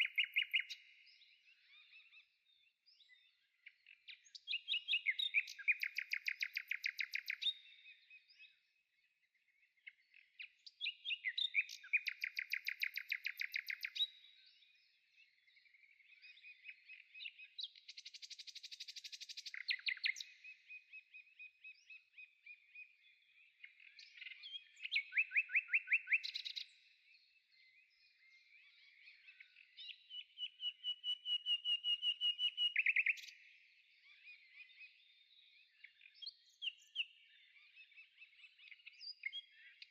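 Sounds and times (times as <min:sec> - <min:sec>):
songbird trilling: 0:00.0 - 0:00.8, 0:04.4 - 0:07.6, 0:10.8 - 0:14.1, 0:17.9 - 0:20.5, 0:24.1 - 0:26.6.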